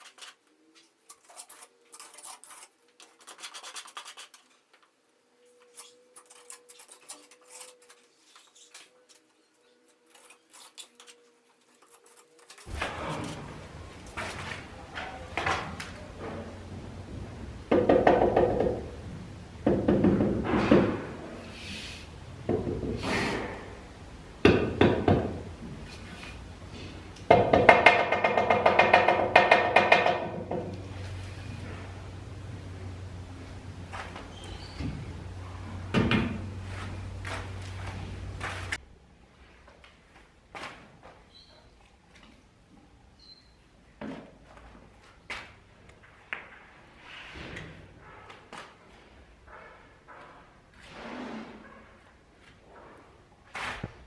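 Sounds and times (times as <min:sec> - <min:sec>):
hand tool scraping a wall: 0:00.0 - 0:14.6, 0:49.6 - 0:52.0.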